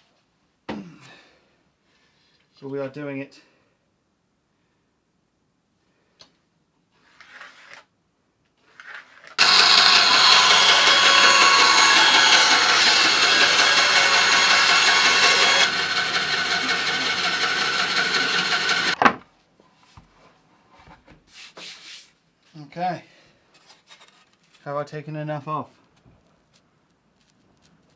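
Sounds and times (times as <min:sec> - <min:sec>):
power tool cutting wood: 0:09.4 - 0:19.0.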